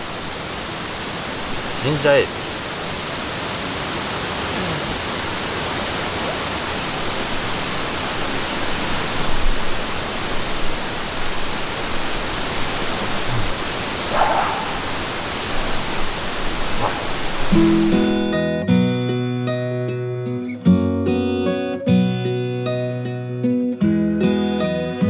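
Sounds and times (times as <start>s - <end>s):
stream rushing: 0.0s - 18.4s.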